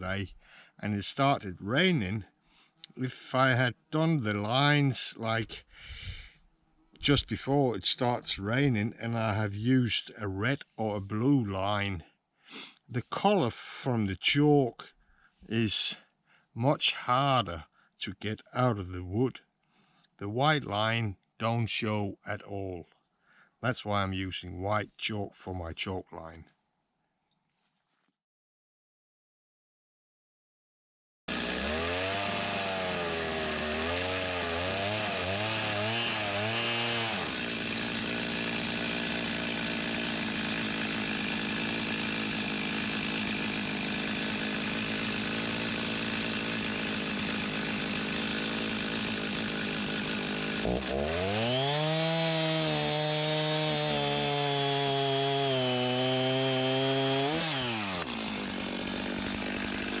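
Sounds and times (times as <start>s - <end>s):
chainsaw cutting wood: 31.3s - 60.0s.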